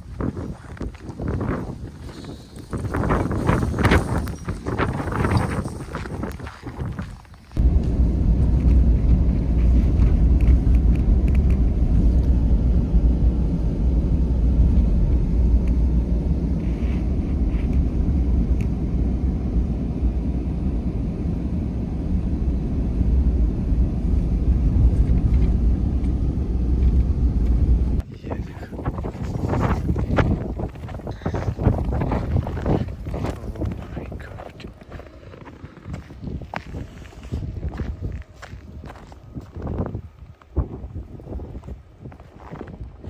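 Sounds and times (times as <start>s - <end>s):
car engine and road noise: 0.0s - 43.0s.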